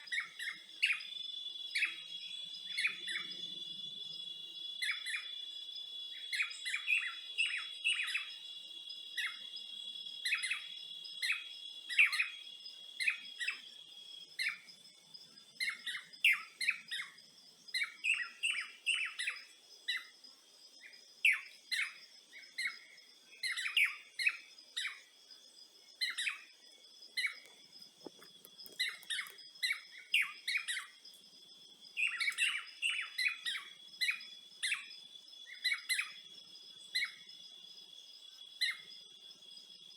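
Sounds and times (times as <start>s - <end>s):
birds chirping: 0.0s - 5.4s, 25.9s - 31.2s, 31.9s - 37.3s
high-pitched insect trill: 0.0s - 39.9s.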